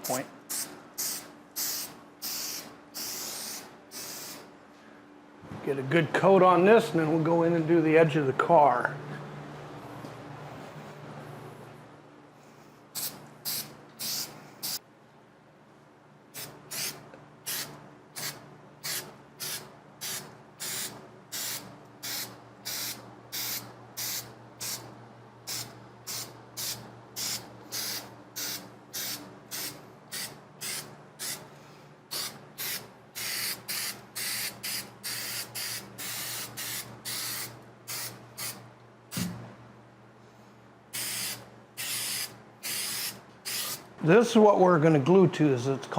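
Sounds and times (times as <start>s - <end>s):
aerosol spray hissing bursts: 0.1s - 4.5s, 13.0s - 14.8s, 25.5s - 31.4s, 32.1s - 38.6s, 41.0s - 43.8s.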